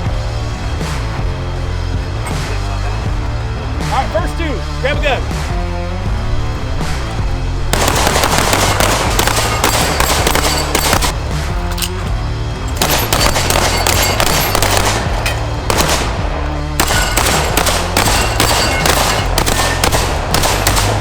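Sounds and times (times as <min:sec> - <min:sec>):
background music with bass line: 0:00.0 - 0:21.0
rapid shotgun fire: 0:07.7 - 0:11.5, 0:12.8 - 0:21.0.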